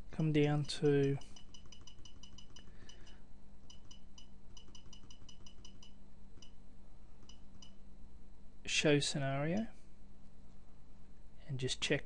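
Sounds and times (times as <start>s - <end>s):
high-pitched ticks: 0.2s - 6.6s.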